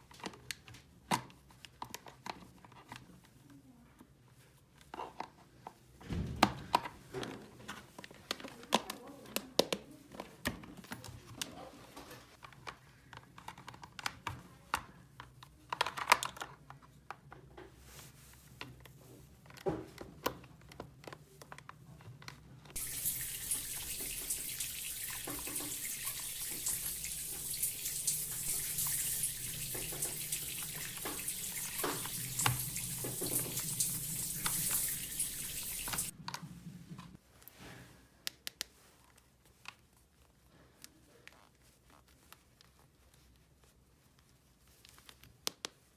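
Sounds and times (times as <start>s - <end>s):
clicks and taps of objects: 5.1s - 11.6s, 12.4s - 17.8s
water running from a tap: 22.8s - 36.2s.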